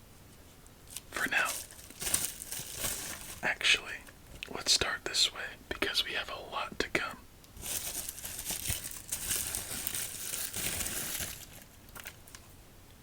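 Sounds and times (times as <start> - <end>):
packaging crinkling: 0.9 - 4.2, 7.6 - 12.4.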